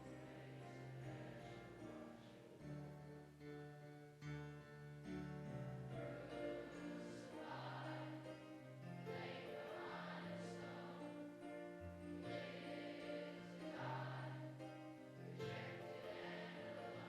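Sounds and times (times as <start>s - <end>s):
group singing religious song: 0.0s - 2.4s, 5.9s - 17.0s.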